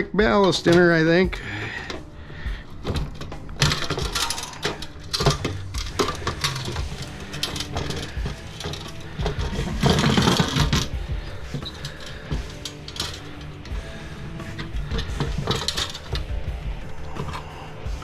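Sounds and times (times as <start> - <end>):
metal parts clinking and clattering: 1.7 - 18.0.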